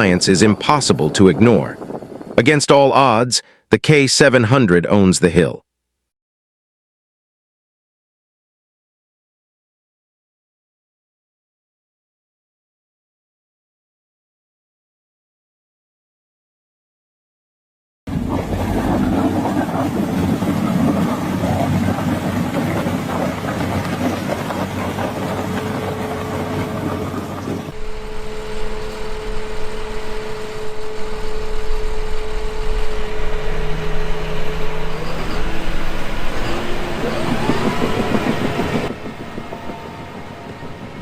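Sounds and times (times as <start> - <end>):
diesel engine running: 18.1 - 41.0
engine whine rising in pitch: 18.1 - 41.0.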